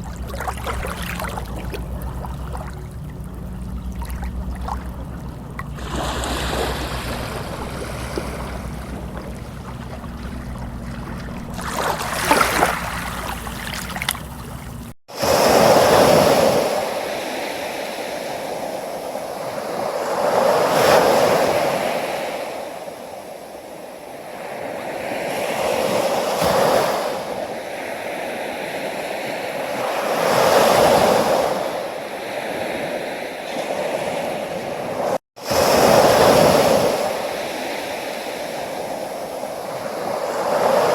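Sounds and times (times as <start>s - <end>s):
low hum: 0.0s - 15.0s
trickling water: 0.0s - 15.0s
sea waves breaking on shore: 0.0s - 40.9s.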